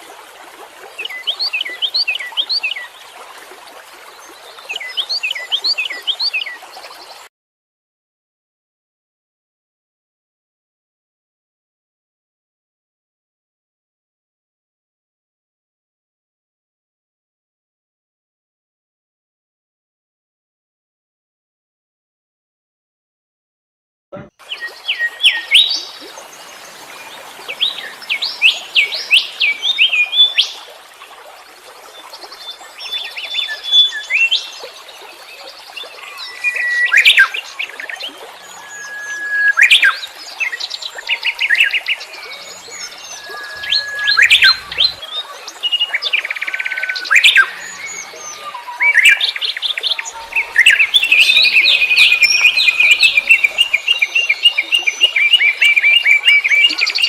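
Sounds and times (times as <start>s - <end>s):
songbirds chirping and trilling: 24.5s - 30.7s, 36.1s - 57.0s.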